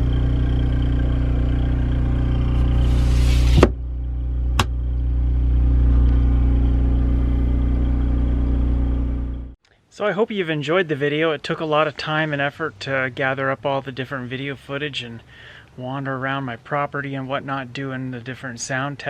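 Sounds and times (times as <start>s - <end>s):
generator engine humming: 0.0s - 9.6s, 11.5s - 15.9s.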